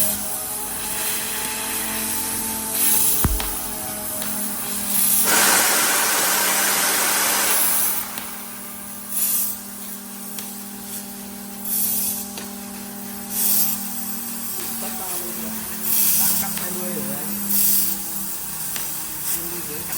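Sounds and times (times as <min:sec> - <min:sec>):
cutting gas hissing: 0:02.8 - 0:04.3, 0:04.9 - 0:09.7.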